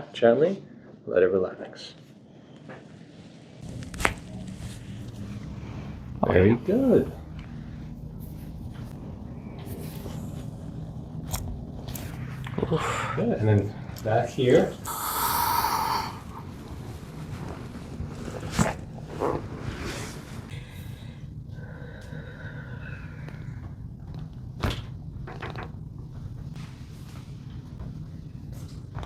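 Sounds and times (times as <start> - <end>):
steady low hum: 2.1 - 29.0
thin whine: 3.6 - 24.1
rushing hiss: 14.8 - 16.3.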